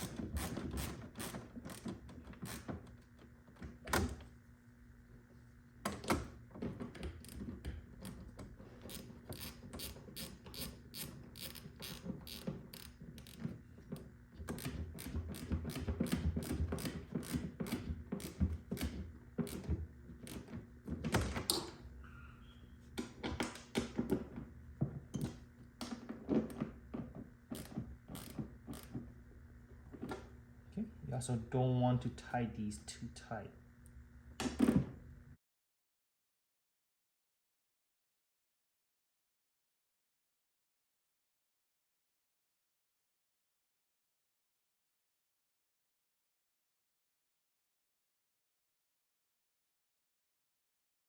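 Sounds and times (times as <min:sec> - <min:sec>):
ratchet wrench clicking: 0:08.9 - 0:13.4, 0:27.6 - 0:28.9.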